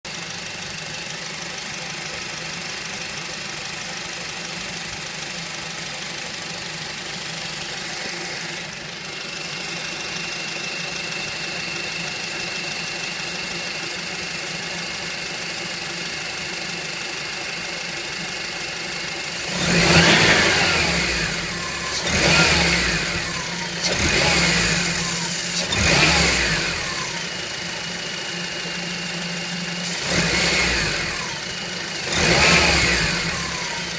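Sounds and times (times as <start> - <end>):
car engine idling: 0.1 - 33.9
engine revving: 19.2 - 33.9.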